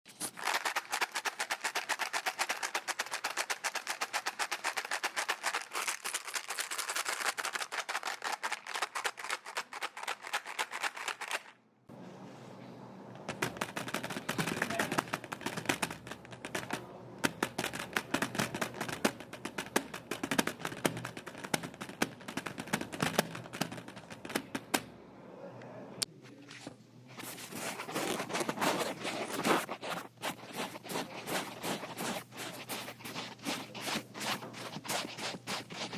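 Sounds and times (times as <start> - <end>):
low steady background noise: 11.6 - 35.9
irregular clicks and taps: 13.2 - 24.9.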